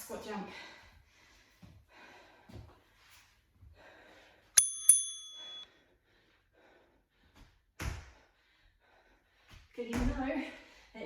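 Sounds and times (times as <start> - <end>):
metallic bell chime: 4.6 - 5.7.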